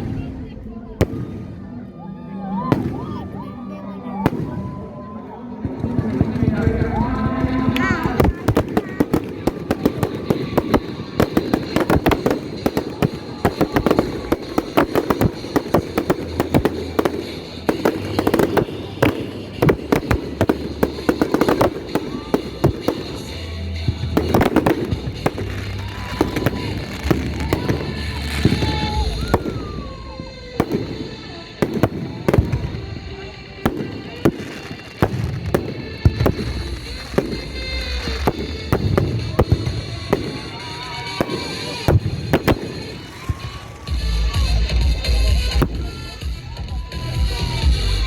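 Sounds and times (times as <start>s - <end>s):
fireworks and firecrackers banging: 0.0s - 48.0s.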